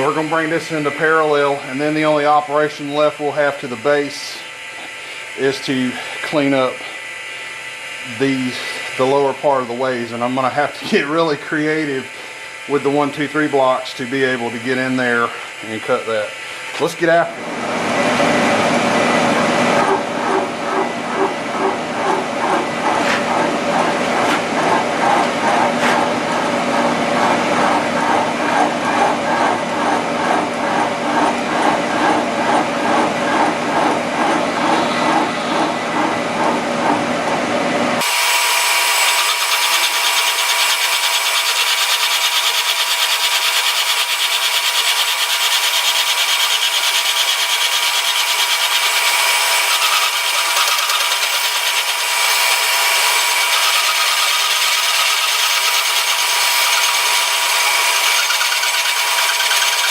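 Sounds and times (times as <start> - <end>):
milling machine cutting metal: 17.8 - 37.0, 38.0 - 59.9.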